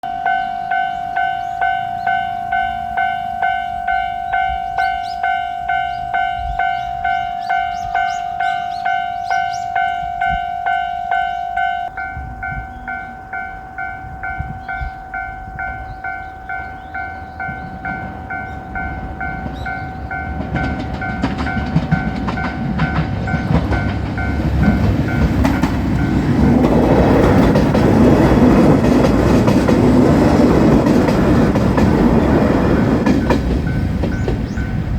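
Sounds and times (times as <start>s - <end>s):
diesel train passing: 0.0s - 34.9s
level crossing alarm bell ringing: 0.0s - 34.9s.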